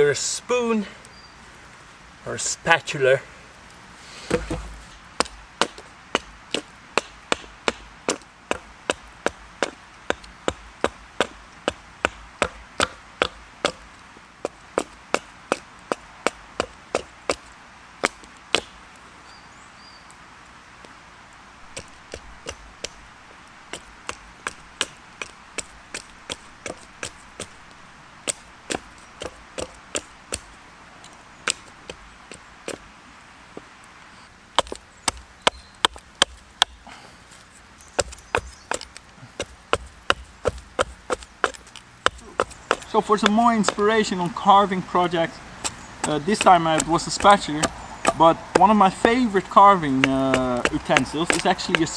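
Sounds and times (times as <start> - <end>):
blade chopping into wood: 4.3 - 13.9, 28.2 - 30.5, 34.6 - 36.8, 38.0 - 44.4, 45.2 - 51.9.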